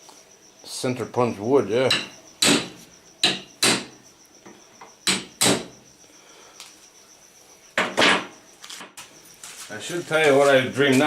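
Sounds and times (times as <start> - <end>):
crickets chirping: 0.0 - 11.0
hammer striking punch on wood: 1.9 - 3.9, 5.0 - 5.7.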